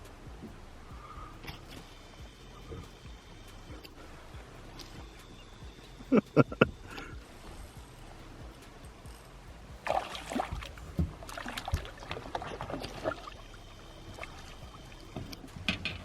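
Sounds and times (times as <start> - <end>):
water splashing: 6.2 - 16.0.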